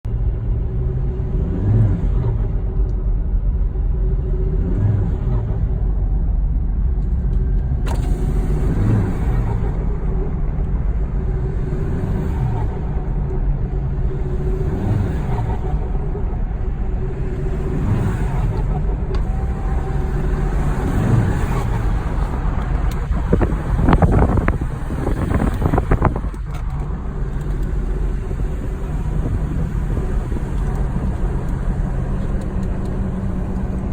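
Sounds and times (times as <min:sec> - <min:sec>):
diesel engine revving: 0:00.1 - 0:33.9
turbo flutter: 0:14.1 - 0:33.9.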